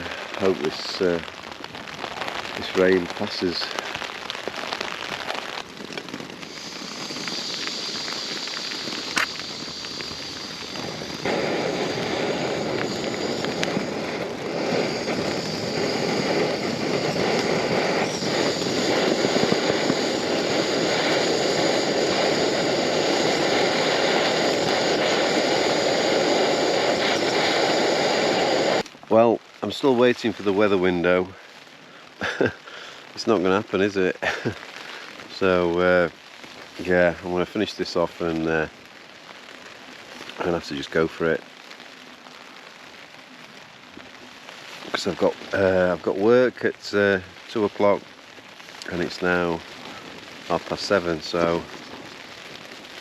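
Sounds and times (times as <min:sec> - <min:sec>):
gas hissing: 0:00.0 - 0:01.3, 0:02.3 - 0:28.9, 0:32.2 - 0:36.0, 0:48.8 - 0:52.2
rain on a tent: 0:00.0 - 0:53.0
gas burner rushing: 0:05.1 - 0:28.9.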